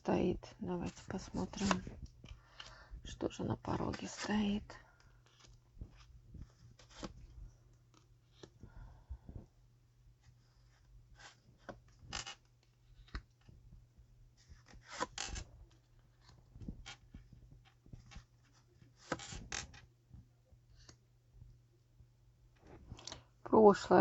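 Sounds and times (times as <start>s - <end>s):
faint low hum: 0.0s - 24.0s
cards sliding and tapping: 1.3s - 2.7s, 5.2s - 7.3s, 10.7s - 13.4s, 14.4s - 15.5s, 16.2s - 19.8s.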